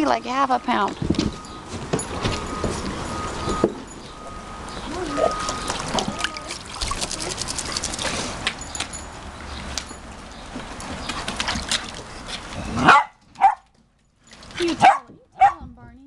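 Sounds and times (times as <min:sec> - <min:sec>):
small dog barking: 0:12.8 - 0:13.6, 0:14.8 - 0:15.6.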